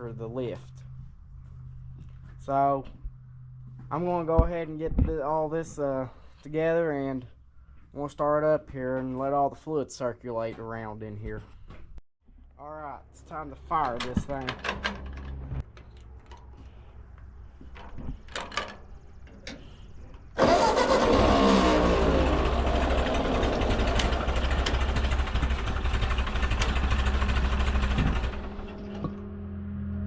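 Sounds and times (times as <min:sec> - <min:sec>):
tractor engine starting and idling: 0:13.3 - 0:30.0.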